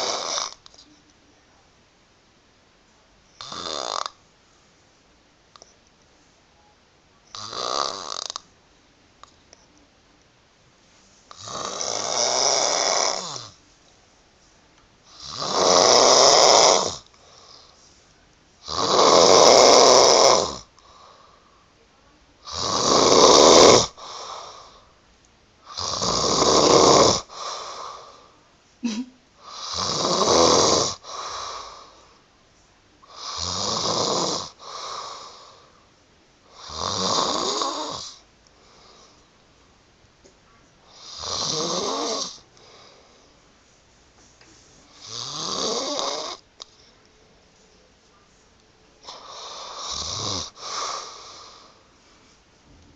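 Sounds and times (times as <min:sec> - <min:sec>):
woman snoring: 0:00.0 - 0:00.6, 0:03.4 - 0:04.2, 0:07.3 - 0:08.4, 0:11.3 - 0:13.6, 0:15.1 - 0:17.7, 0:18.6 - 0:21.2, 0:22.4 - 0:24.8, 0:25.6 - 0:32.0, 0:33.0 - 0:35.7, 0:36.5 - 0:38.2, 0:40.9 - 0:42.4, 0:44.9 - 0:46.4, 0:49.0 - 0:51.9.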